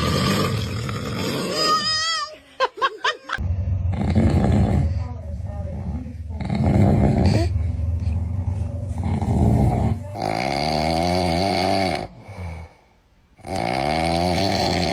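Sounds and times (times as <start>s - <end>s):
man snoring: 0.0s - 1.9s, 9.0s - 12.8s, 13.4s - 14.9s.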